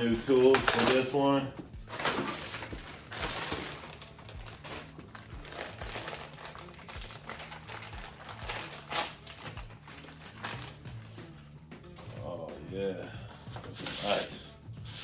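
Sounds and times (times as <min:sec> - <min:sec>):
plastic packaging crinkling: 0:00.0 - 0:10.8.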